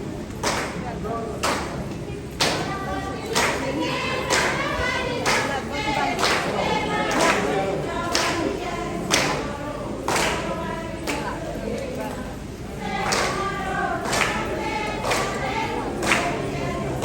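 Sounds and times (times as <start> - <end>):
group singing folk song: 2.4 - 17.0.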